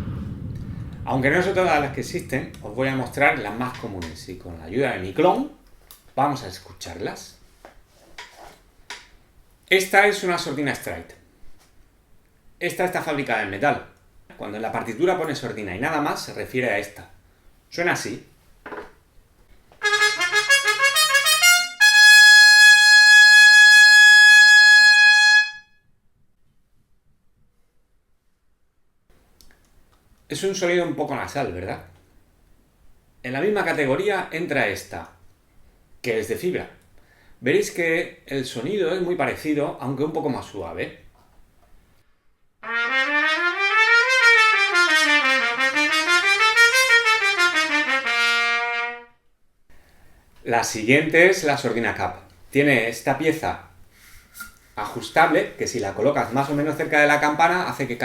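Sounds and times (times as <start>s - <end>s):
muted trumpet: 19.8s - 25.8s, 42.6s - 49.2s.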